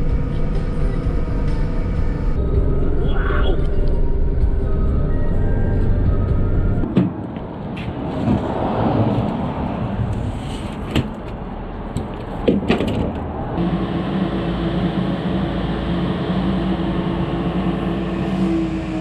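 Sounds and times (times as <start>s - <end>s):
steady low hum: 0.0s - 6.8s, 13.6s - 19.0s
vehicle road rumble: 0.0s - 19.0s.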